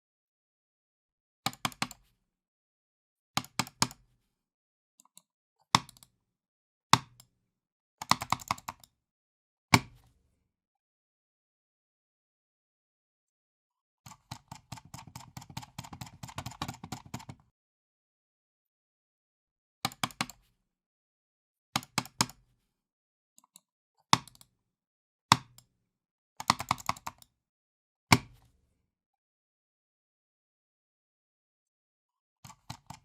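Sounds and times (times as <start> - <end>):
computer mouse clicking: 1.5 - 2.1, 5.0 - 6.1, 8.0 - 8.9, 14.1 - 17.4, 19.9 - 20.5, 21.8 - 22.4, 23.4 - 24.5, 26.4 - 27.3, 32.4 - 33.0.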